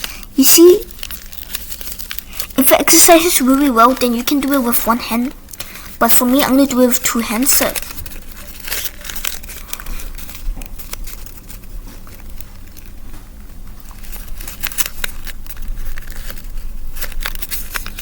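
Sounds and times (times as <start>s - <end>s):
paper crinkling and rustling: 0.0s - 18.0s
paper panels clicking: 14.0s - 18.0s.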